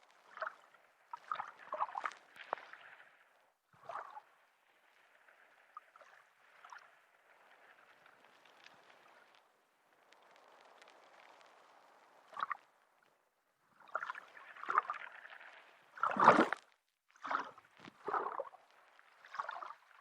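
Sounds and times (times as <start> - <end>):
underwater bubbling: 17.2 - 20.0.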